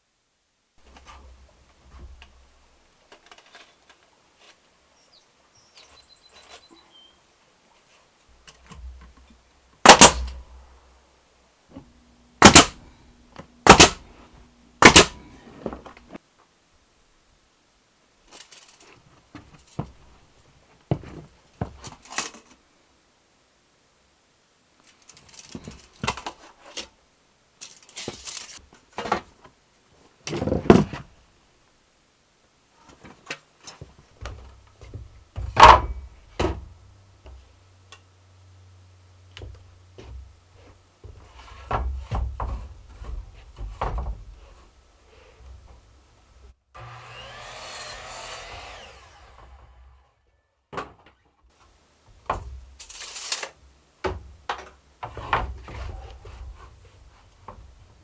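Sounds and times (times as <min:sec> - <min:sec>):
tools and wood knocking and rattling: 0:11.7 - 0:16.2, 0:33.0 - 0:37.5, 0:39.4 - 0:44.8, 0:50.7 - 0:58.0.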